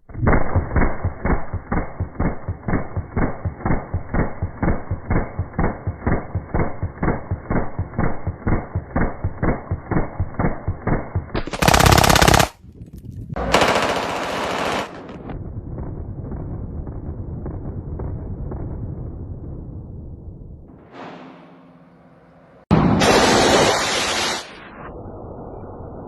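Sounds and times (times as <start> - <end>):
muffled automatic gunfire: 11.4 - 12.6, 13.4 - 15.2
harsh noise bursts: 20.9 - 24.8.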